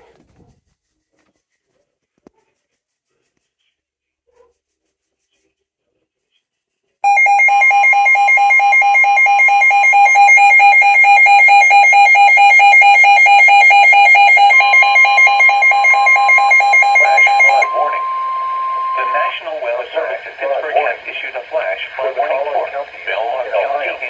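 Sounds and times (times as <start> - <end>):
electronic alert tone: 7.1 - 21.0.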